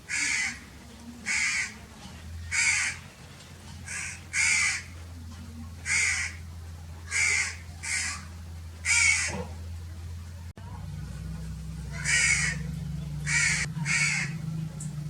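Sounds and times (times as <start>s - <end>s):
low steady hum: 0.0s - 15.0s
crow cawing: 0.1s - 0.6s, 1.3s - 1.8s, 2.5s - 3.0s, 3.9s - 5.0s, 5.8s - 6.4s, 7.1s - 9.4s, 11.9s - 12.6s, 13.3s - 14.4s.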